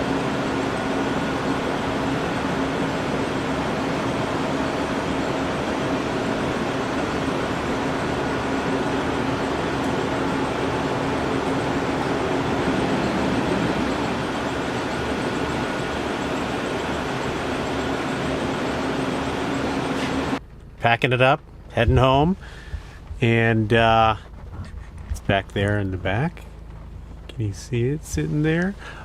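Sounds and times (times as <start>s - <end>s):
mechanical rushing noise: 0.0s - 28.8s
low hum: 0.0s - 29.0s.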